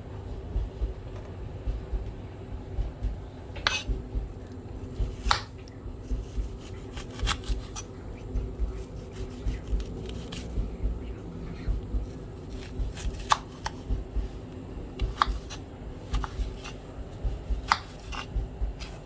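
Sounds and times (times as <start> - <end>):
knife chopping on board: 3.6 - 4.2, 4.9 - 11.0, 11.8 - 19.0.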